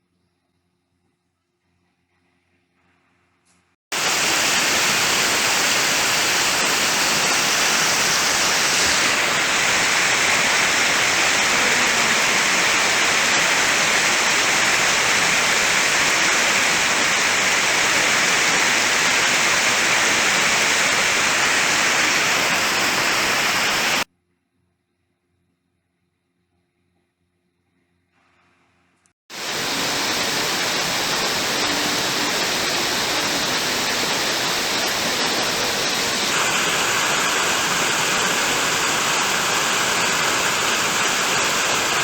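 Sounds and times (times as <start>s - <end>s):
waterfall rushing: 3.9s - 24.1s, 29.3s - 42.0s.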